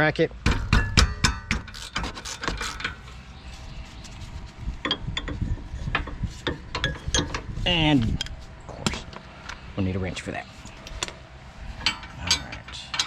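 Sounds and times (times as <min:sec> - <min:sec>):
hand ratchet clicking: 0:01.5 - 0:02.9.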